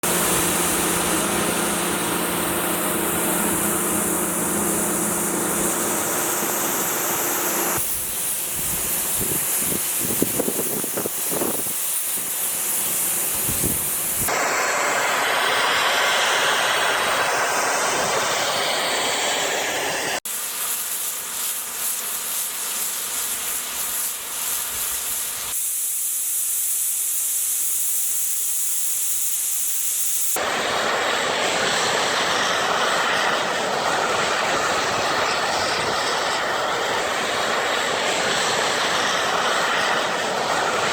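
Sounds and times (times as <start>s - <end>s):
low hum: 0.0s - 7.8s
snowmaking guns hissing spray: 0.0s - 40.9s.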